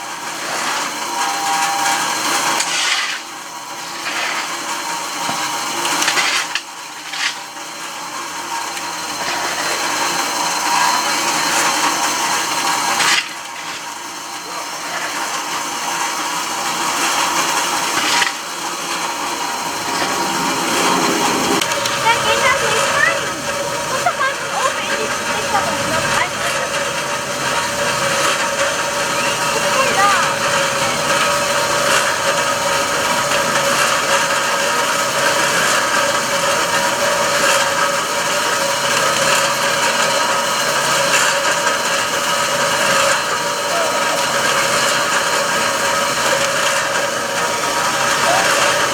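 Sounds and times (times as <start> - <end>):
model electric drive and gears whirring: 0.0 - 48.9
small electric motors whining: 0.0 - 48.9
rough scraping and grinding: 2.3 - 7.6, 9.1 - 38.0.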